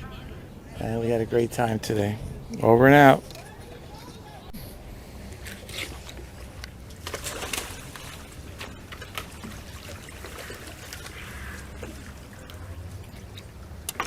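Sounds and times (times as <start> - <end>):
water splashing and trickling: 5.2 - 14.0.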